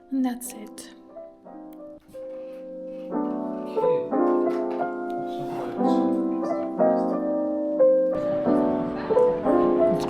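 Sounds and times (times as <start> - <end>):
soft piano music: 0.0 - 10.0.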